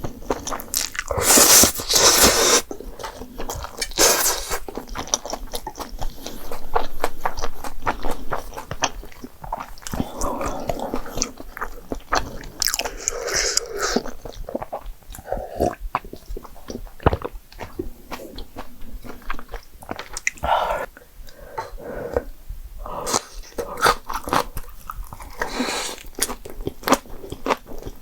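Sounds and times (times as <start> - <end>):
person biting and chewing: 0.2 - 14.9, 23.1 - 28.0.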